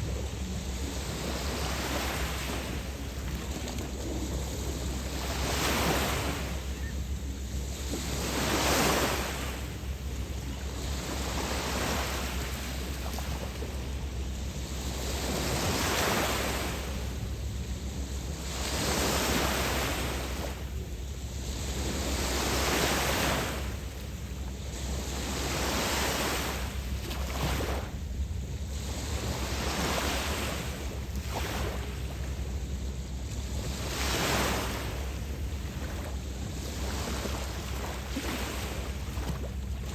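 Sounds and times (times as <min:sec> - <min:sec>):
waves breaking on beach: 0:00.0 - 0:39.9.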